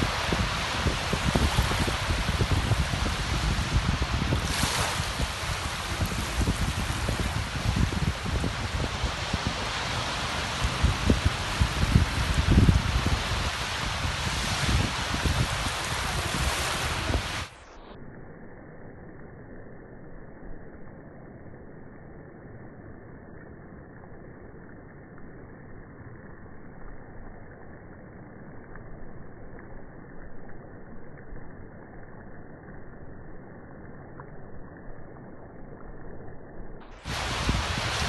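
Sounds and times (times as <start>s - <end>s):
muffled water washing: 0.0s - 17.7s, 36.9s - 38.0s.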